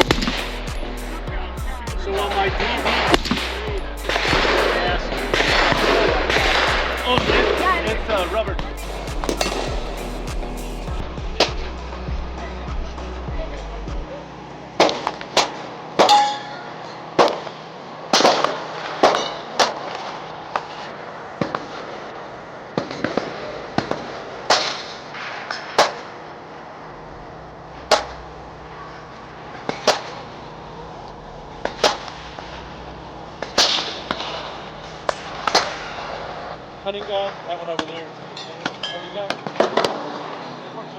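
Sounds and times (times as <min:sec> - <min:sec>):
gunshots: 0:08.9 - 0:10.6.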